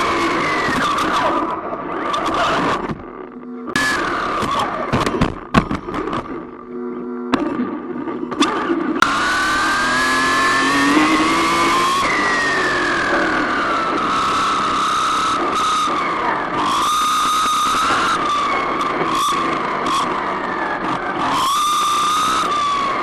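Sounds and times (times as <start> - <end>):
toy car motor whining: 8.4 - 23.0.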